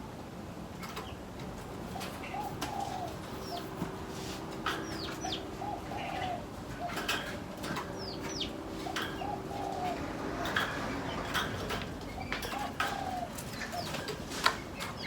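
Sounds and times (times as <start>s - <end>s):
dove cooing: 1.8s - 15.0s
small birds chirping and whistling: 1.9s - 3.8s, 4.7s - 11.4s, 12.0s - 15.0s.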